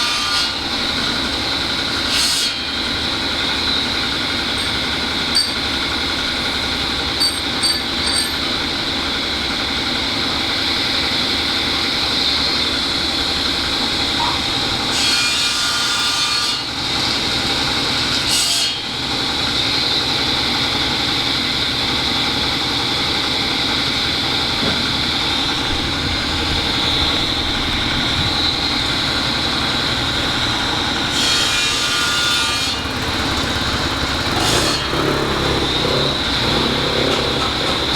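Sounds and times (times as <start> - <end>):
metalworking machinery whine and hum: 0.0 - 37.9
hissing metal cutting: 22.6 - 37.9.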